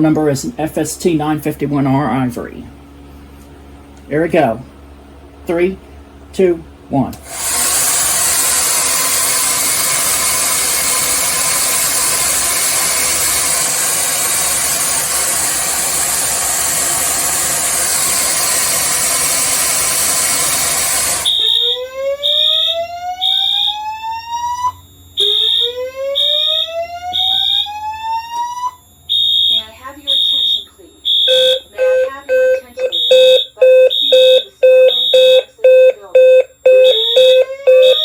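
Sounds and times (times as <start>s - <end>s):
hair dryer blowing: 7.2s - 21.3s
fire alarm horn beeping: 7.2s - 38.0s
rising whoop alarm tone: 11.1s - 35.3s, 36.8s - 38.0s.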